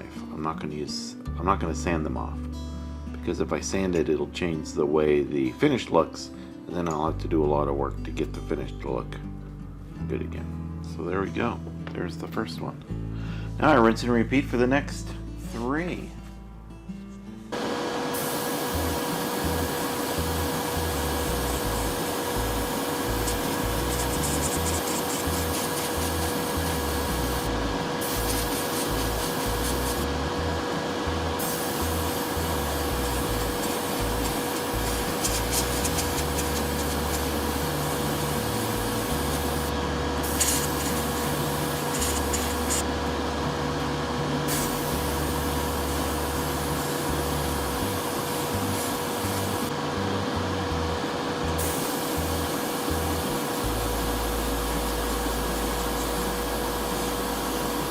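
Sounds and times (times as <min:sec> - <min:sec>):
small electric blower running: 0:17.5 - 0:57.9.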